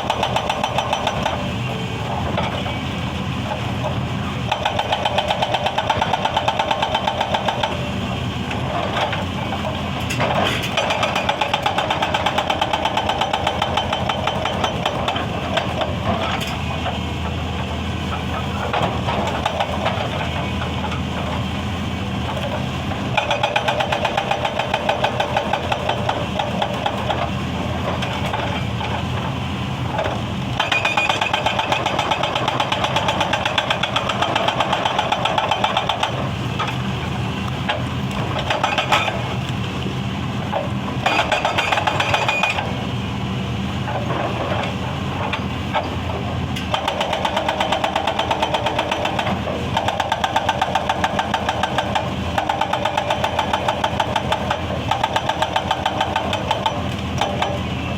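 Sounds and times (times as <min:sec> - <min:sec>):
hydraulic breaker hammering stone: 0:00.0 - 0:01.4, 0:04.5 - 0:07.9, 0:08.8 - 0:16.4, 0:18.6 - 0:21.3, 0:22.4 - 0:29.0, 0:30.0 - 0:36.8, 0:37.6 - 0:39.4, 0:40.5 - 0:42.6, 0:46.6 - 0:57.7
diesel engine running: 0:00.0 - 0:57.9.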